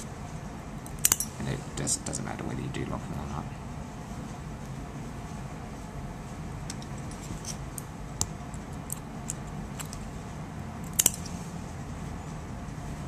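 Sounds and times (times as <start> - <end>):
steady low hum: 0.0 - 13.0
metal surgical instruments clicking: 0.9 - 1.4, 10.8 - 11.3.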